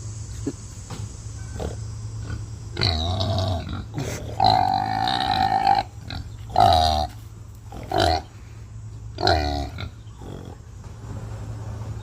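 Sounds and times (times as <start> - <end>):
pig squealing: 2.8 - 8.3.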